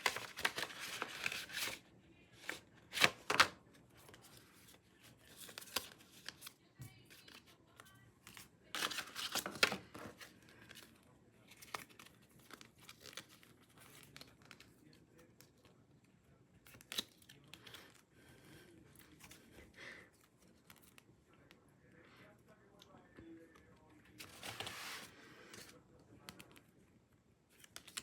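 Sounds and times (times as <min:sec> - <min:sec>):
packaging tearing and crinkling: 0:00.0 - 0:01.8.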